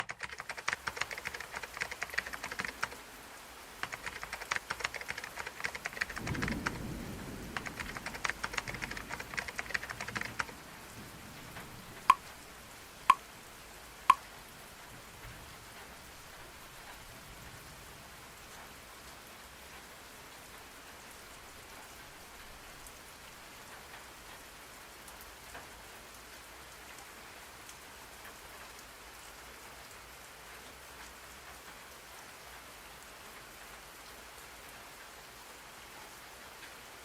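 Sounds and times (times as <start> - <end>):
keyboard key clicks: 0.0 - 3.0, 3.8 - 6.8, 7.6 - 10.5
rain white noise hiss: 0.0 - 37.0.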